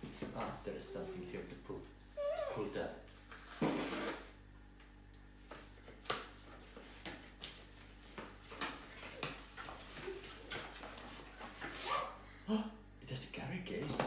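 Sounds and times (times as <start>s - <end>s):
cardboard and plastic rustling: 5.6s - 12.0s.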